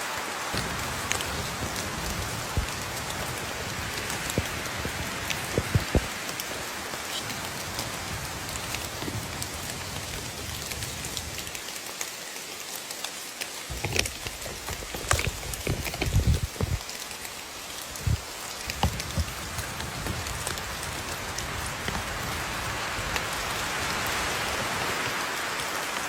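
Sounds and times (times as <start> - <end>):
steady rain falling: 0.0 - 26.0
raindrops ticking: 0.4 - 26.0.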